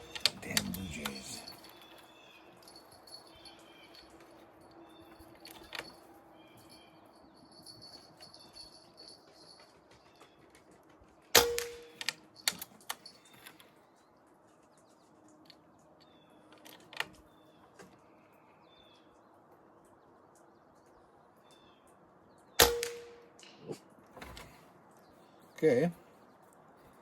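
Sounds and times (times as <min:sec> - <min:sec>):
air rifle shots: 0:22.6 - 0:23.3.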